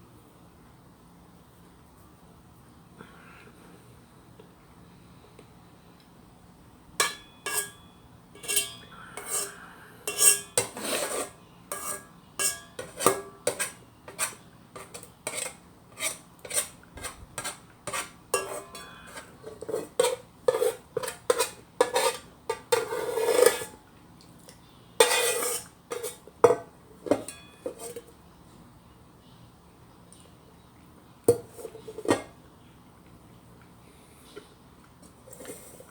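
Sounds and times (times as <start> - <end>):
spoon scraping a pot: 7.0 - 23.8, 25.0 - 28.2, 31.3 - 32.3, 35.0 - 35.9.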